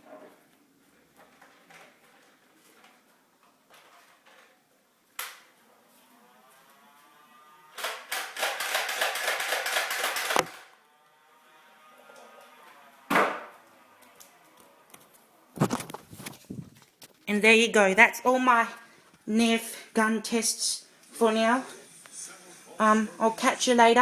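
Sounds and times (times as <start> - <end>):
rapid plastic clacks: 7.8 - 10.6.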